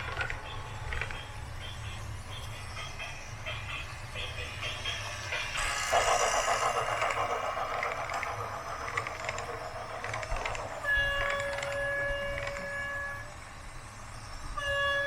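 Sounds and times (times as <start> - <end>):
rapid mechanical rattling: 2.9 - 12.7.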